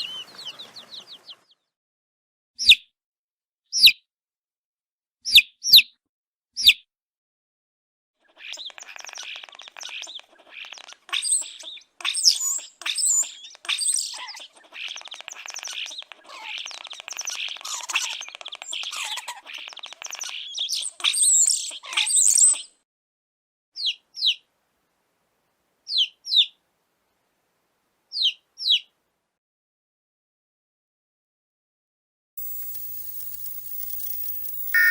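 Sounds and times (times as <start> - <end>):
baby chicks peeping: 0.0 - 1.6, 8.3 - 22.6, 32.4 - 34.9.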